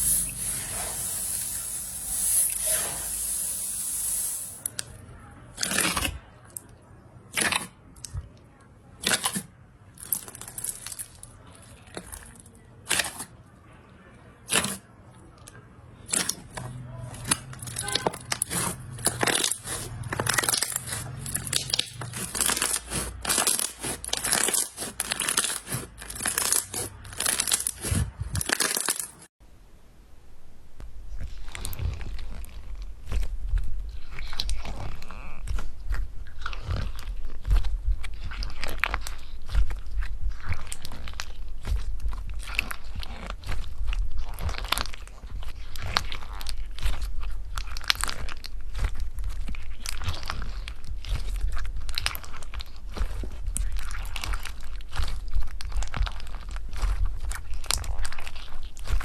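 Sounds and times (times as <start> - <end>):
slime crackling and popping: 9.0 - 13.3, 15.5 - 29.3, 31.2 - 59.0.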